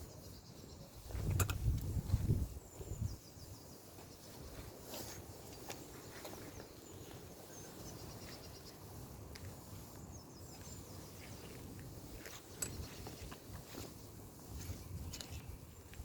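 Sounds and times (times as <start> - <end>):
wind rumbling on microphone: 0.0 - 4.8, 7.8 - 16.0.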